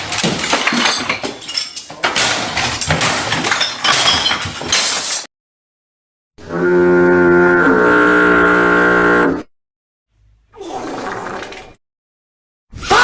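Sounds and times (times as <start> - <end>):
glass breaking and clinking: 0.0 - 5.3.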